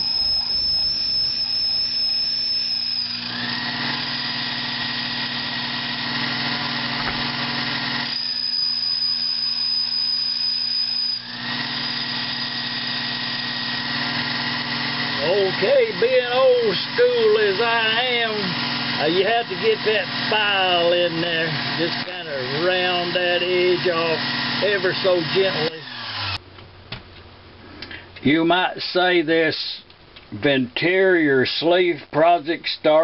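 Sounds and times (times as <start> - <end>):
lathe motor humming with whine: 0.0 - 26.4.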